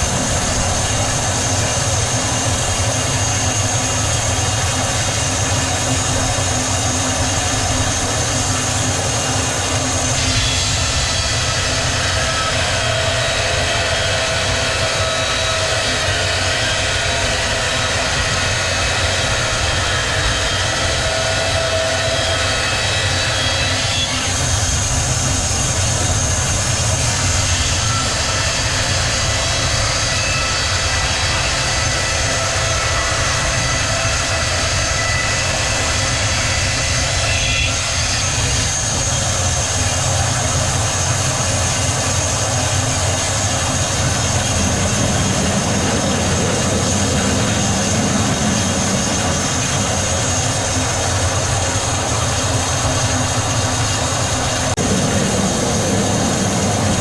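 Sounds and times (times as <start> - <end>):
sawmill machine noise: 0.0 - 57.0
thin high whine: 22.4 - 57.0.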